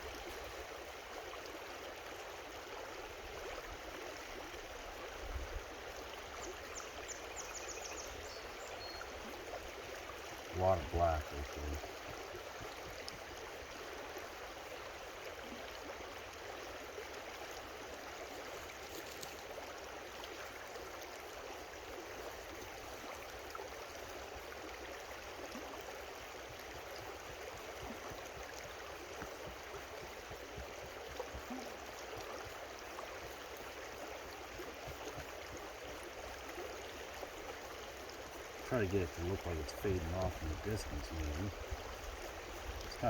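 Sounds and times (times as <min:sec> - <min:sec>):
creek water flowing: 0:00.0 - 0:43.0.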